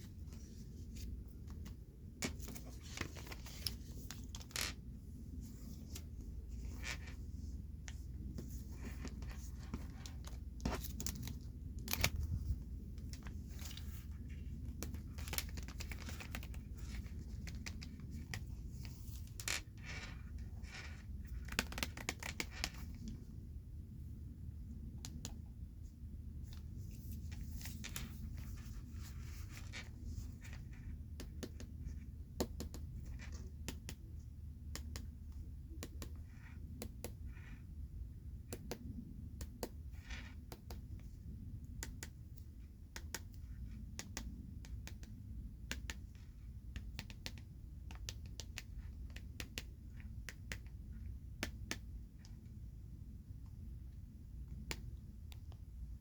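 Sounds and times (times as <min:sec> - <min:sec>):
scratchy card rustles: 0:00.0 - 0:07.3, 0:07.9 - 0:23.2, 0:26.5 - 0:34.0
low steady hum: 0:00.0 - 0:56.0
cards tapping and clicking: 0:00.3 - 0:04.8, 0:07.9 - 0:23.2, 0:27.3 - 0:31.8, 0:32.4 - 0:37.5, 0:38.5 - 0:41.1, 0:46.7 - 0:50.8, 0:51.4 - 0:52.4.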